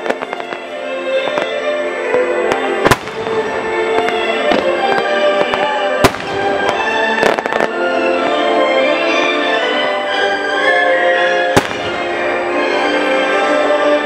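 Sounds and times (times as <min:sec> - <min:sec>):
small firework pops: 0:00.0 - 0:00.6, 0:01.2 - 0:07.8
fireworks shells bursting: 0:00.0 - 0:08.2, 0:11.4 - 0:12.5
music playing: 0:00.0 - 0:14.0.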